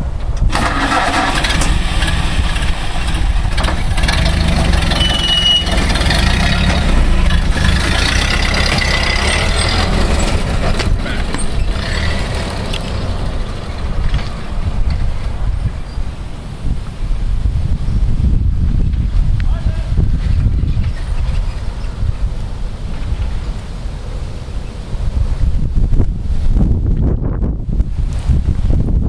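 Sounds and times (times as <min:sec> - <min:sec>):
truck engine running: 0:00.5 - 0:15.6
brief high squeak: 0:04.9 - 0:05.8.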